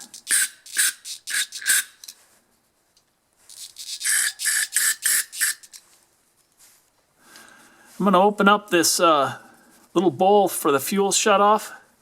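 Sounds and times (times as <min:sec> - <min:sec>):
aerosol spray hissing bursts: 0:03.8 - 0:05.7.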